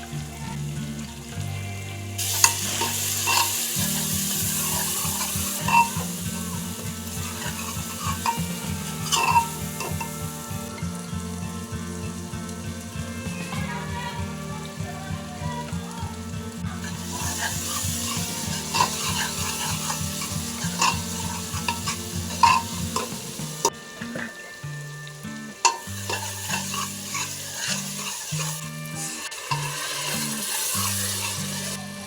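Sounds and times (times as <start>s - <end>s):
food sizzling in a pot: 0.0s - 32.0s
spoon scraping a pot: 2.2s - 12.2s, 15.9s - 24.5s, 25.6s - 32.0s.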